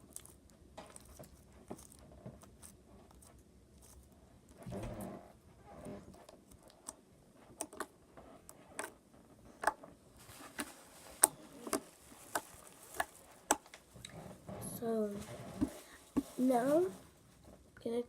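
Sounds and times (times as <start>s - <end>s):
soft rustle: 10.1s - 18.0s.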